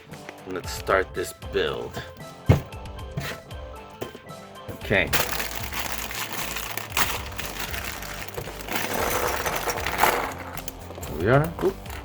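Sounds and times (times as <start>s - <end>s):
plastic bag crinkling and tearing: 5.2s - 10.8s.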